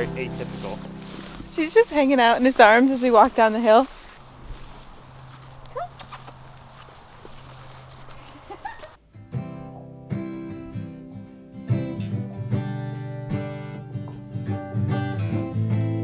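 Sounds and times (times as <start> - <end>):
acoustic guitar strumming: 0.0 - 3.8, 9.0 - 16.0.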